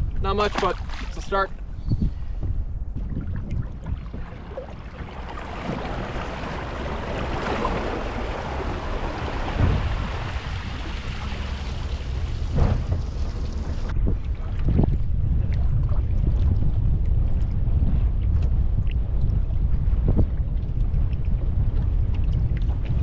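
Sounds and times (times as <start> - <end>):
wind buffeting microphone: 0.0 - 23.0
rushing hiss of wind and water: 4.1 - 13.9.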